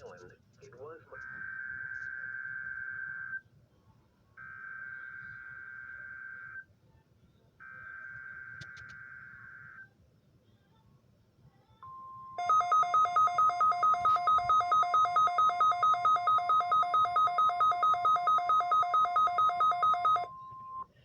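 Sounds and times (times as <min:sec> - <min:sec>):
steady warning alarm tone: 0:11.8 - 0:20.9
rapid alarm beeping: 0:11.9 - 0:20.9.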